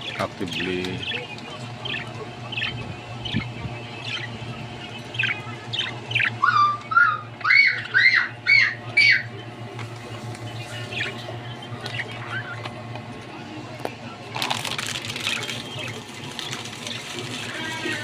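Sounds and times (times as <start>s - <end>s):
budgerigars chirping: 0.0s - 12.7s.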